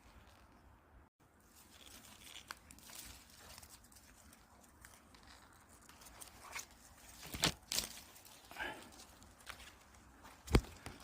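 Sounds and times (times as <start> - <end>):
rustling of leaves and twigs: 0.0 - 11.0.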